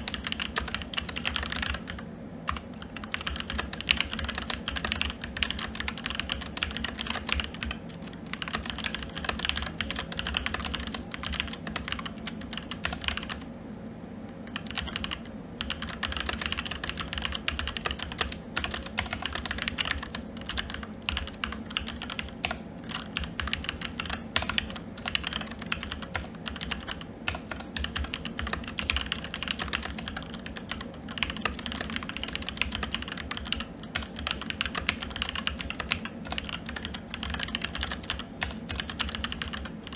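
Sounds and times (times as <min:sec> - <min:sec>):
fast typing on mechanical keyboard: 0:00.0 - 0:13.5, 0:14.5 - 0:39.9.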